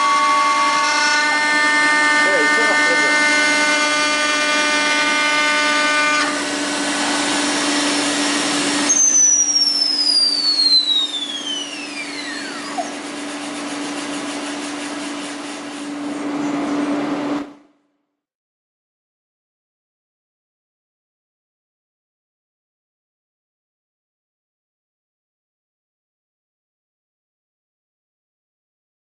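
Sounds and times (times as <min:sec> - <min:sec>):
milling machine noise: 0:00.2 - 0:17.4
vacuum pump humming: 0:01.9 - 0:17.2
spindle whine falling in pitch: 0:07.2 - 0:13.0.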